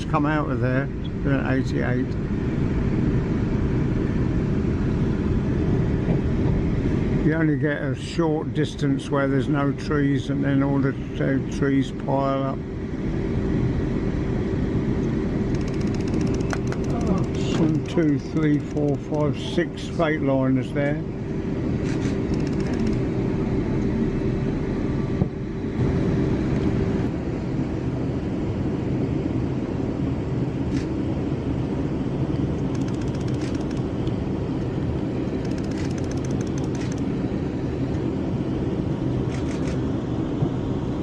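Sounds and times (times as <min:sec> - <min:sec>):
faint clicks and rattles: 0:15.6 - 0:19.0.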